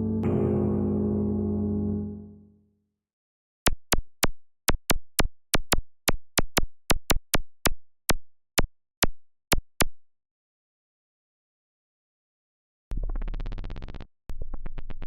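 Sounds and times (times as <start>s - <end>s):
sharp electronic clicks: 3.7s - 10.0s.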